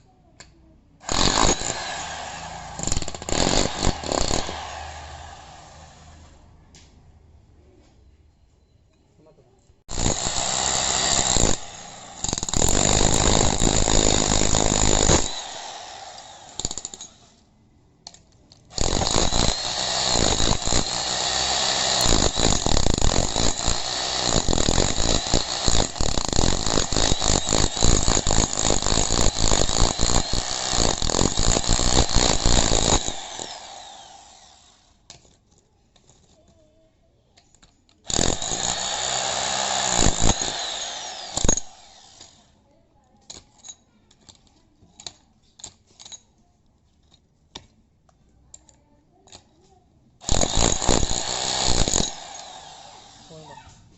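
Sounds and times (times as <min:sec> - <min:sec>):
demolition hammer chiselling concrete: 0:01.0 - 0:05.3, 0:09.9 - 0:17.2, 0:18.7 - 0:34.1, 0:38.1 - 0:42.0, 0:50.2 - 0:53.4.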